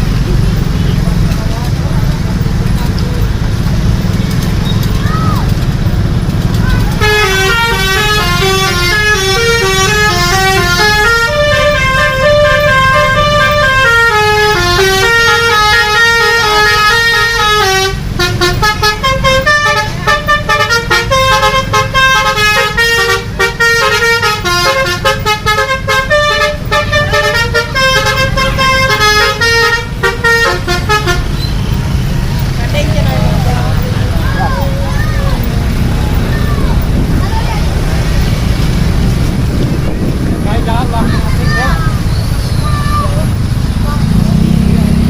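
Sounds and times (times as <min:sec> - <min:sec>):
multi-tone bus horn tune: 0:06.5 - 0:33.3
low rumble: 0:32.9 - 0:42.7.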